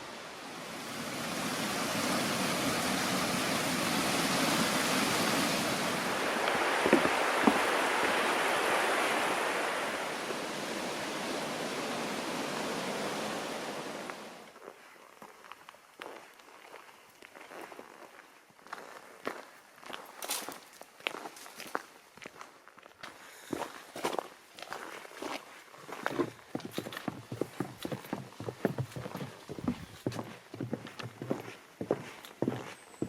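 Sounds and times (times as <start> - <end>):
flowing water rushing: 0.0 - 14.5.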